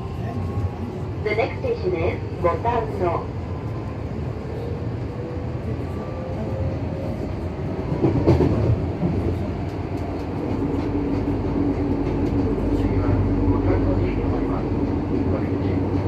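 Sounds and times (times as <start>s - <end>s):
train wheels rumbling on track: 0.0s - 16.0s
train clunk: 7.9s - 13.0s.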